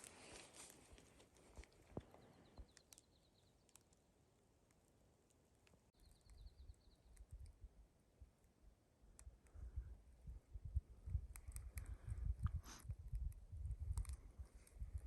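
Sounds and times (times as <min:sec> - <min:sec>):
wind rumble on microphone: 0:09.5 - 0:15.0.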